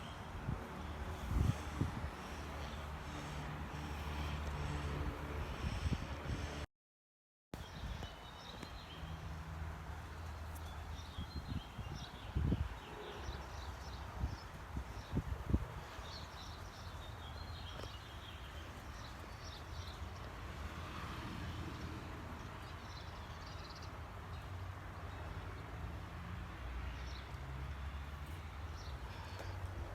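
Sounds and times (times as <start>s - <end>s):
wind rumbling on microphone: 0.0s - 6.7s, 10.9s - 13.4s, 14.0s - 18.0s
birds chirping: 27.9s - 29.9s.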